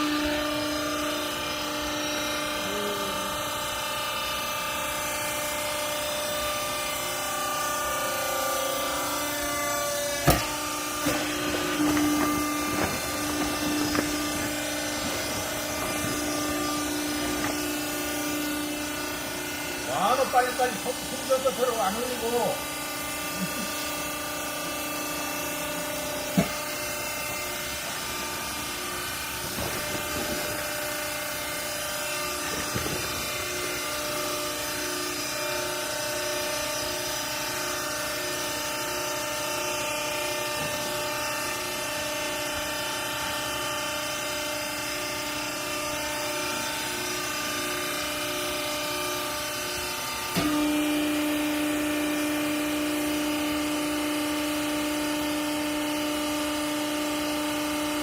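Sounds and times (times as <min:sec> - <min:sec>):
baler machine humming: 0:00.0 - 0:43.4.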